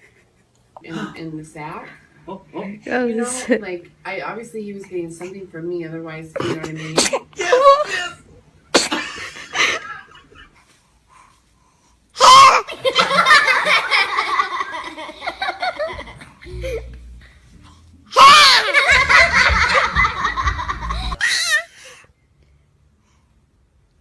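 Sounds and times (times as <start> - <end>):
baby sneezing: 6.4 - 7.4, 12.2 - 12.7
laughter: 9.0 - 10.5, 12.7 - 16.9, 18.5 - 21.2.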